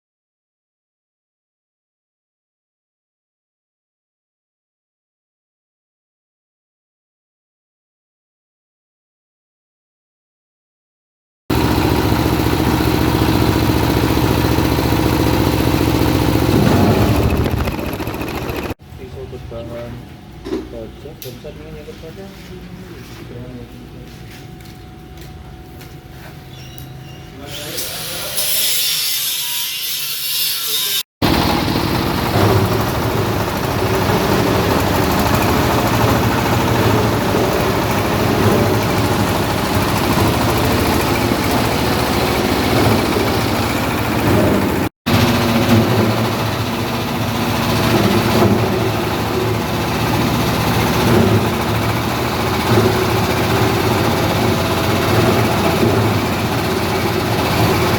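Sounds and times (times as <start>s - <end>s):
grinder shredding husk: 11.5s - 18.8s, 27.4s - 57.9s
motor hum: 11.5s - 19.3s, 31.2s - 57.9s.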